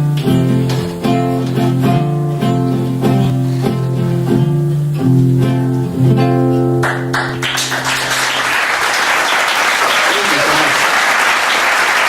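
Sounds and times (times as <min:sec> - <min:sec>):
acoustic guitar playing: 0:00.0 - 0:09.0
audience applause: 0:06.8 - 0:12.0.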